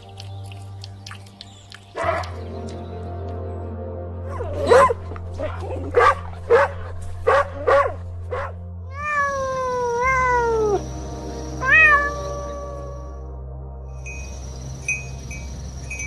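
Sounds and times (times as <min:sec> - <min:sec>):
cat meowing: 0:08.9 - 0:10.8, 0:11.6 - 0:13.1.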